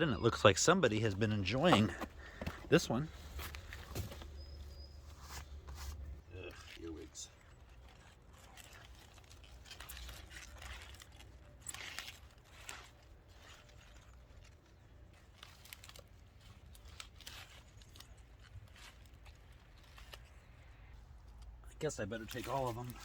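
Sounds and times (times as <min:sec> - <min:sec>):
cabbage leaves rustling and crackling: 0:02.7 - 0:23.0
leaves snapping: 0:06.5 - 0:21.6.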